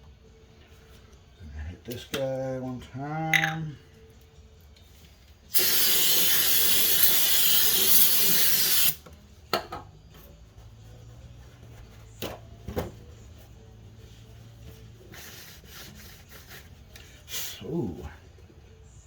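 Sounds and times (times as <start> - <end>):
aerosol spray can hissing: 5.5 - 9.0
parts being handled knocks: 9.5 - 10.1.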